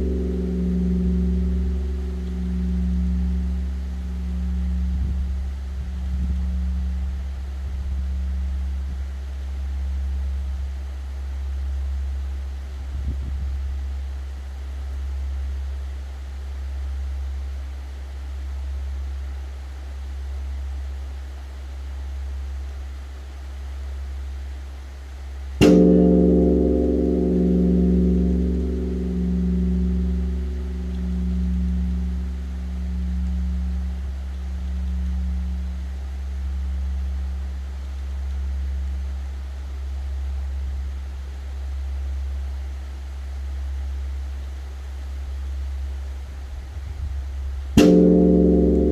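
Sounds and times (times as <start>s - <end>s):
large temple bell ringing: 0.0s - 6.8s, 25.6s - 36.8s, 47.8s - 48.9s
deep steady hum: 0.0s - 48.9s.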